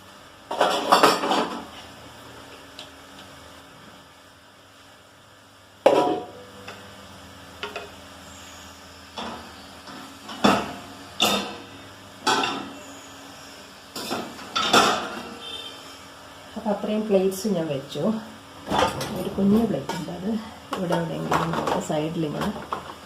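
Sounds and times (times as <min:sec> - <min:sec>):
plates clattering in dishwasher rack: 0:00.5 - 0:01.7, 0:14.0 - 0:15.3, 0:18.7 - 0:20.2.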